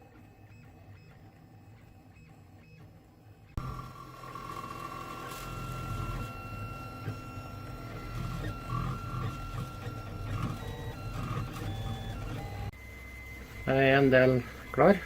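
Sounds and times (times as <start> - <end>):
stepper motors whining: 3.6 - 15.0.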